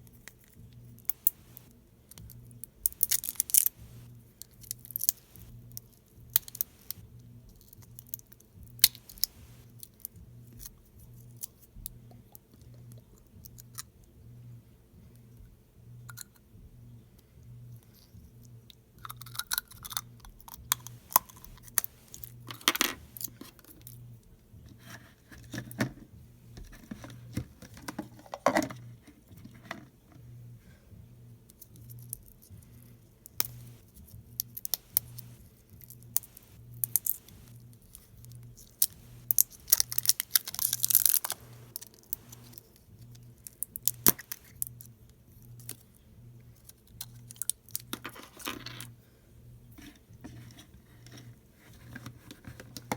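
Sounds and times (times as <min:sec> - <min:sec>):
slime clicking and crackling: 0:01.1 - 0:04.0, 0:04.6 - 0:07.0, 0:34.4 - 0:37.5, 0:38.3 - 0:42.6.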